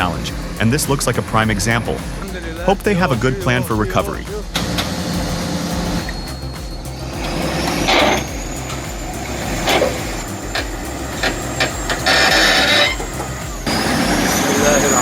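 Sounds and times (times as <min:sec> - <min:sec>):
diesel machinery rumbling: 0:00.0 - 0:15.0
high whine climbing in pitch: 0:00.0 - 0:15.0.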